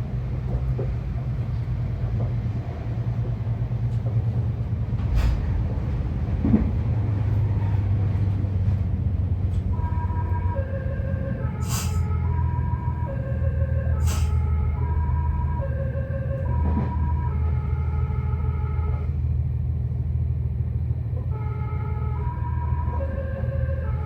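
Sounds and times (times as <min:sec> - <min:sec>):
train wheels clacking: 0:00.0 - 0:09.7
electric train rumbling past: 0:00.0 - 0:24.0
musical train horn melody: 0:09.6 - 0:19.3, 0:21.2 - 0:24.0.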